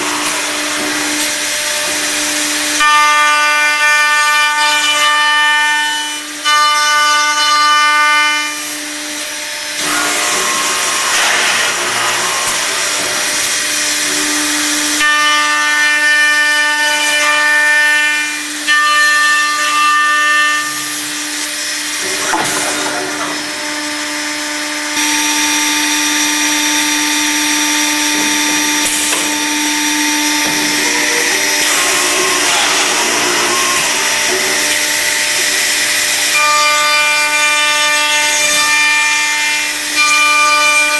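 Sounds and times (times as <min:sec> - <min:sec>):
machine spindles whining: 0:08.8 - 0:18.7, 0:19.3 - 0:40.9
drill bits cutting wood: 0:09.8 - 0:15.4, 0:30.2 - 0:40.9.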